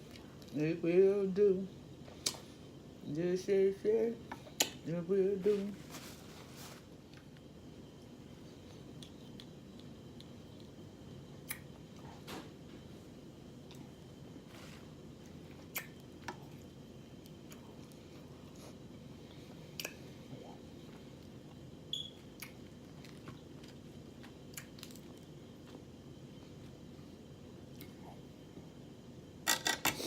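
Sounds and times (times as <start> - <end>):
person chewing: 15.3 - 18.8, 22.3 - 25.8.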